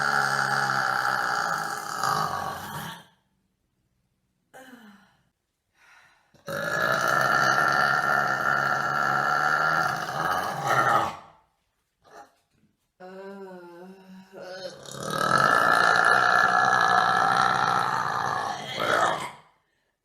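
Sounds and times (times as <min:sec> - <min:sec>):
woman burping: 0:14.4 - 0:19.4.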